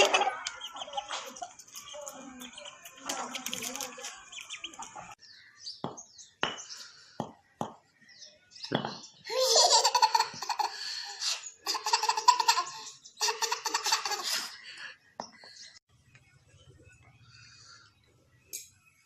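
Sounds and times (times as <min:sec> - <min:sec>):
baby laughing: 0:09.3 - 0:10.8, 0:11.6 - 0:14.5.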